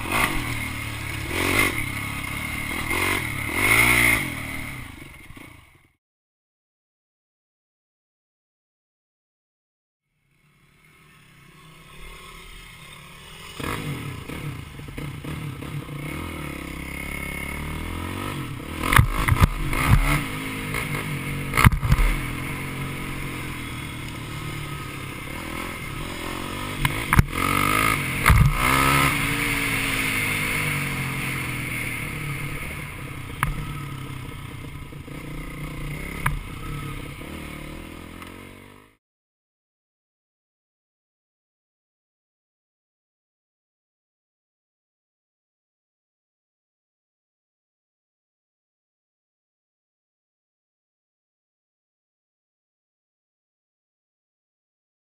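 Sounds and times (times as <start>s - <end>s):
dirt bike engine revving: 0.0s - 5.8s, 11.2s - 39.0s.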